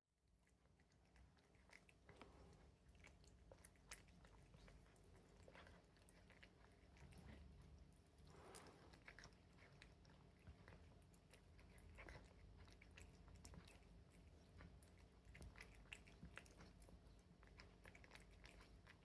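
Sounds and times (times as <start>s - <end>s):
cat chewing food: 0.2s - 19.0s.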